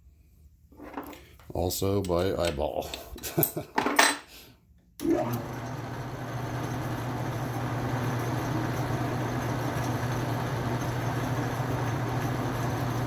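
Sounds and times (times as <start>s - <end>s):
metal lathe running: 5.0s - 13.0s.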